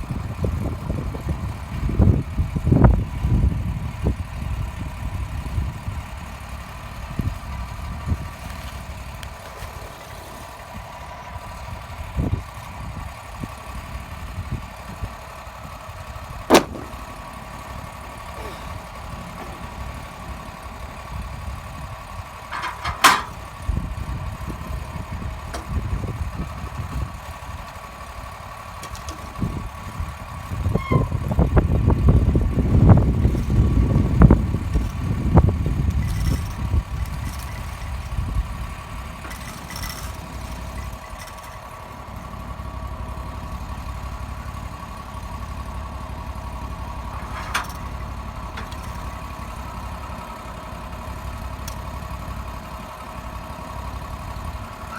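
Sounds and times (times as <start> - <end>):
engine running: 0.0 - 54.9
rumbling and knocking: 16.4 - 21.7.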